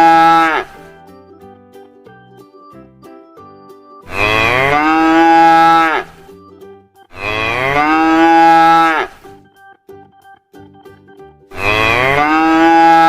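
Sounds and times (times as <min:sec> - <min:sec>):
cow mooing: 0:00.0 - 0:00.8, 0:04.1 - 0:06.2, 0:07.2 - 0:09.2, 0:11.6 - 0:13.0
faint background music: 0:00.0 - 0:13.0.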